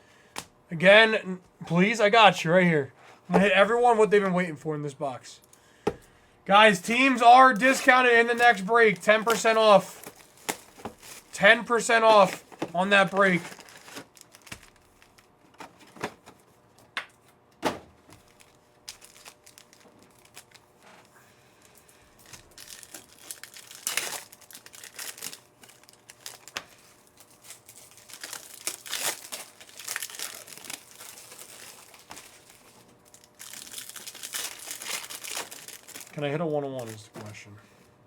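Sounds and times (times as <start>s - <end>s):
wrappers tearing and crinkling: 6.6s - 16.3s, 18.1s - 37.4s.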